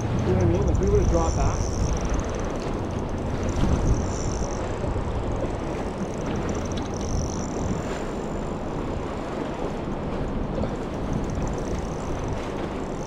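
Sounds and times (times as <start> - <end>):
thin high whine: 0.0 - 8.7
boat engine running: 0.0 - 13.0
water noise: 0.0 - 13.0
wind: 0.0 - 13.0.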